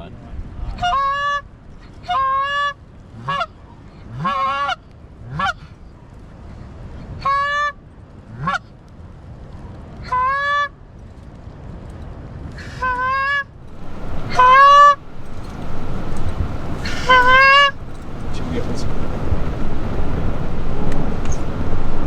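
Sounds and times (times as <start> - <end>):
wind noise: 0.0 - 22.0
goose call honks and clucks: 0.7 - 5.7, 7.2 - 8.7, 10.0 - 10.7, 12.6 - 20.0.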